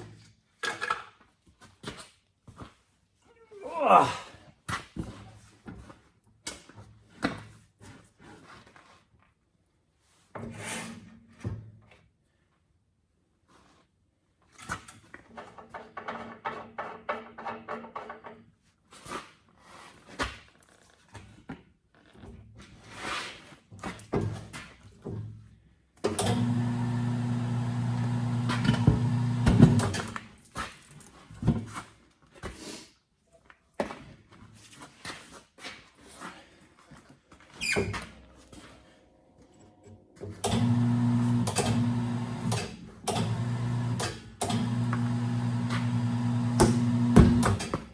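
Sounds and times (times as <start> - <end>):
tire changer motor running: 26.2 - 30.2, 40.4 - 47.9.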